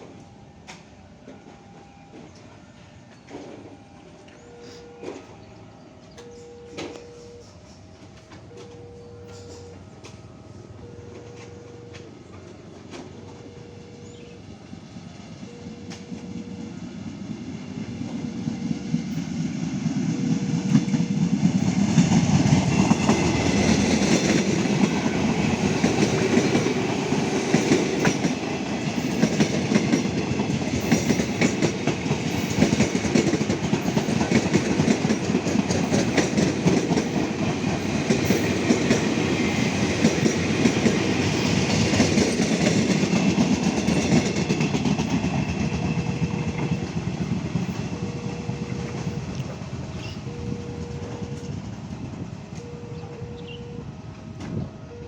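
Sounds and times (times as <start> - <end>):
train wheels clattering over rail joints: 19.0 - 53.5.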